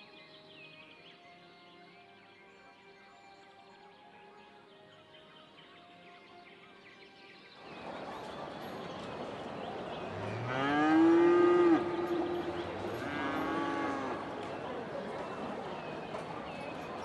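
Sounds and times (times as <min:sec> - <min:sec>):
cow mooing: 0:10.0 - 0:15.7.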